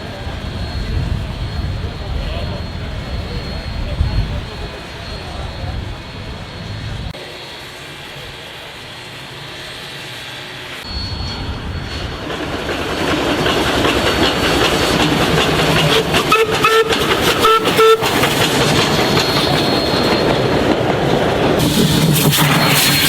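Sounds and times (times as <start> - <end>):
train wheels clattering on rails: 11.1 - 23.0
steam train whistle toots: 15.7 - 20.6.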